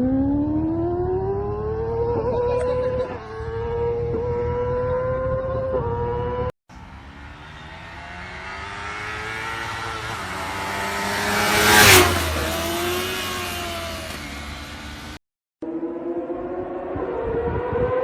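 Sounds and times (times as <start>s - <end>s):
motorcycle passing by: 0.0s - 18.0s.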